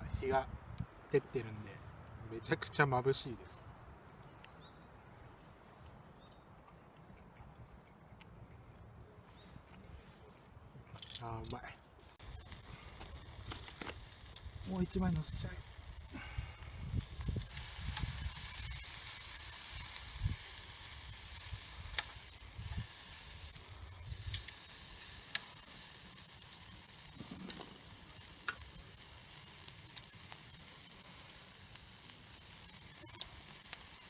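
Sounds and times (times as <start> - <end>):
wind rumble on microphone: 0.0 - 1.1, 12.2 - 19.0, 19.7 - 20.5
meat sizzling on a grill: 12.2 - 34.0.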